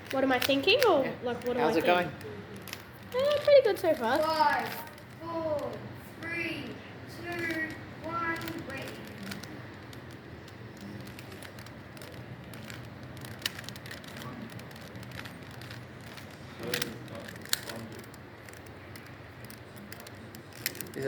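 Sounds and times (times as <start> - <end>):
low room hum: 0.0 - 21.0
puzzle cube layers clicking: 7.2 - 21.0.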